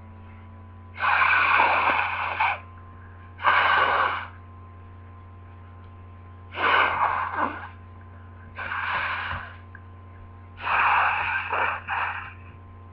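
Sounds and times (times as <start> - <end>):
person sneezing and gasping: 6.6 - 7.8, 10.6 - 12.4.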